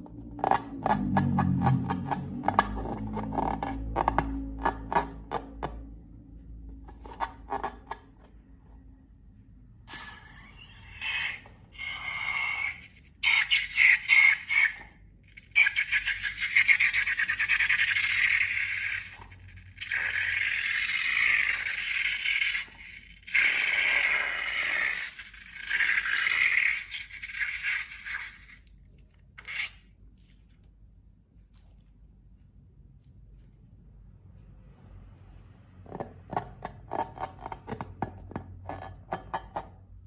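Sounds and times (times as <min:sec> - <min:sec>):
slime crackling and scraping: 0:00.0 - 0:05.6.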